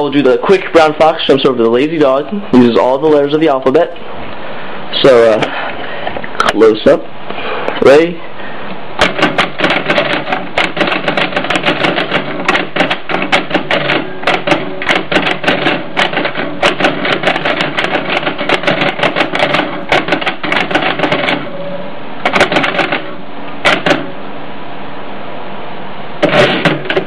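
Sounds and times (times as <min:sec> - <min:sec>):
typewriter clacking: 0:09.0 - 0:21.6, 0:22.2 - 0:24.1, 0:26.2 - 0:27.0.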